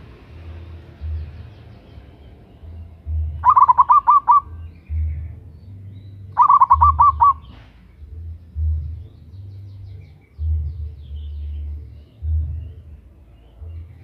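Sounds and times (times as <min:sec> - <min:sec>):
low rumble: 0:00.0 - 0:03.7, 0:04.4 - 0:14.0
dove cooing: 0:03.1 - 0:05.2, 0:06.4 - 0:07.6.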